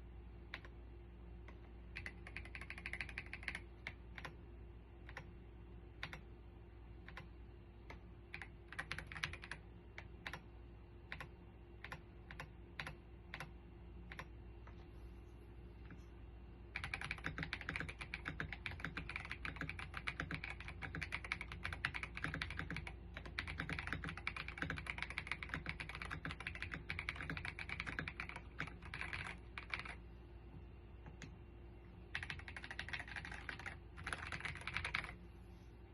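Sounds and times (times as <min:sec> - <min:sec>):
mechanical keyboard typing: 0:00.5 - 0:00.7, 0:01.5 - 0:04.4, 0:05.1 - 0:05.3, 0:06.0 - 0:06.2, 0:07.1 - 0:07.3, 0:07.9 - 0:10.4, 0:11.1 - 0:13.5, 0:14.1 - 0:14.3, 0:16.7 - 0:30.0, 0:32.1 - 0:35.2.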